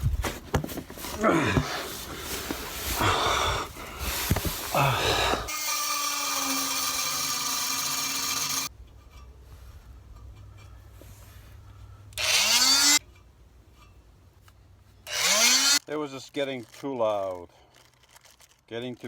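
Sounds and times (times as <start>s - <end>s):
electric power tool cutting metal: 5.5s - 8.7s, 12.2s - 13.0s, 15.1s - 15.8s.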